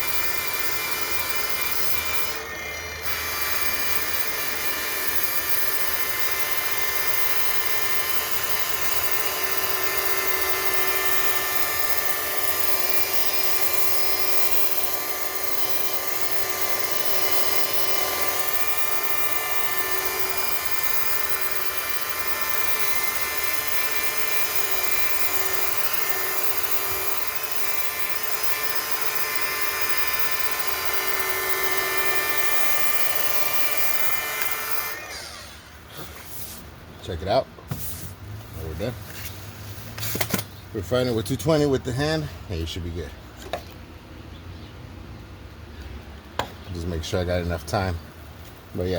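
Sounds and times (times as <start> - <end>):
abrasive disc sanding filler: 0.0 - 35.4
rotary polisher motor whine: 0.0 - 36.3.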